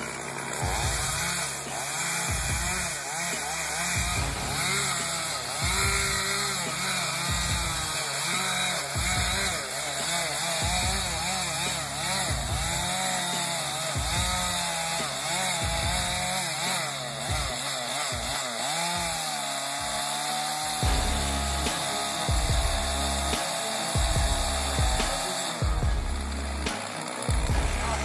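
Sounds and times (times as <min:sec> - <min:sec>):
chainsaw cutting wood: 0:00.0 - 0:28.0
low repeating thump: 0:04.0 - 0:06.3.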